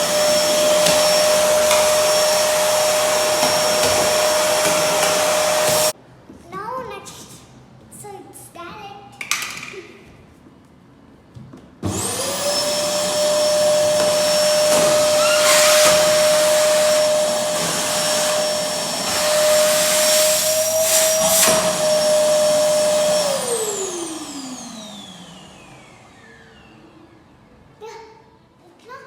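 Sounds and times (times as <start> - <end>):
vacuum cleaner motor whining: 0.0 - 6.0, 11.8 - 27.4.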